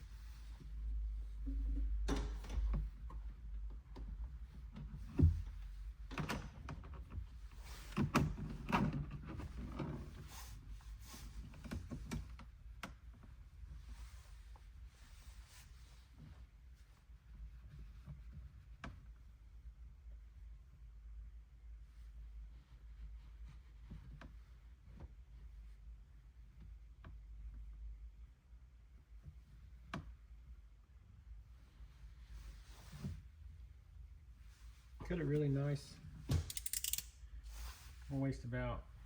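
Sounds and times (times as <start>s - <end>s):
knocks and clicks of handling parts: 1.4s - 10.0s, 36.2s - 37.2s.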